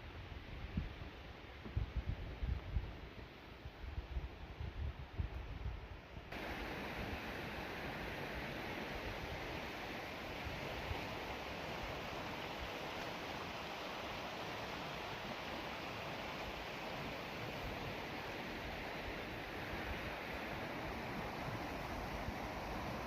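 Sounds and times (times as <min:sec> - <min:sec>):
rush of flowing water: 0:06.3 - 0:23.0.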